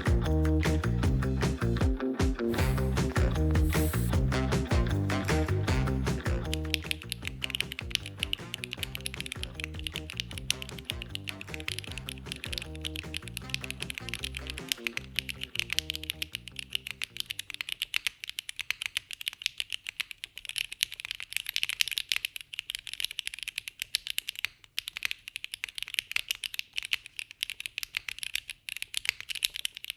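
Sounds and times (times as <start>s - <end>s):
background music: 0.0s - 15.9s.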